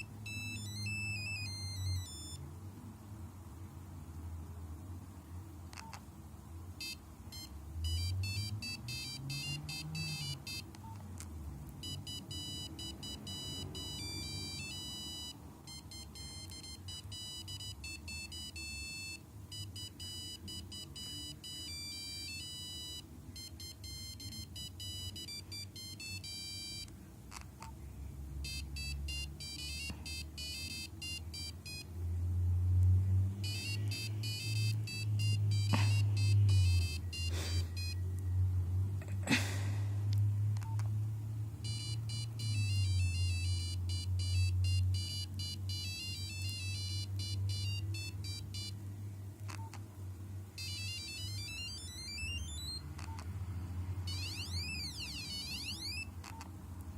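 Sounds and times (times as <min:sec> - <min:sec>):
mobile phone beeping ringtones: 0:00.0 - 0:02.4, 0:06.8 - 0:11.0, 0:11.8 - 0:26.9, 0:28.4 - 0:31.9, 0:33.4 - 0:38.1, 0:41.6 - 0:48.8, 0:50.6 - 0:53.3, 0:54.0 - 0:56.5.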